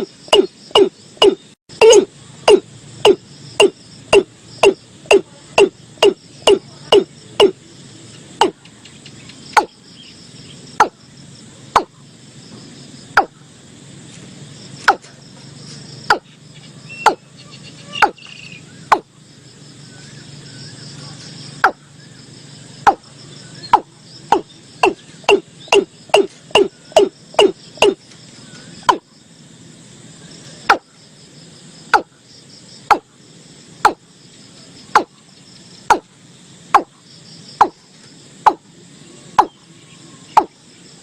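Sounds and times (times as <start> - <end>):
watercock calling: 16.1 - 19.1, 23.6 - 28.0.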